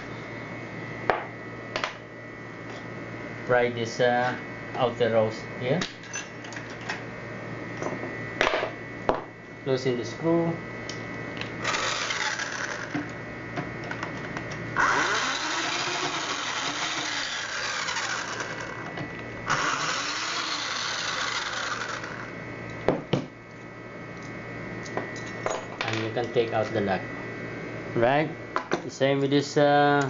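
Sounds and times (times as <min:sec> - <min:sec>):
electric screwdriver running: 0:11.6 - 0:13.1, 0:14.8 - 0:18.9, 0:19.5 - 0:22.3.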